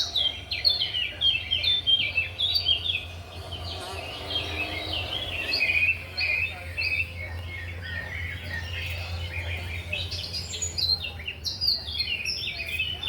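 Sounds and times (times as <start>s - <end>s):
birds chirping: 0.0s - 13.0s
steady low hum: 0.0s - 13.0s.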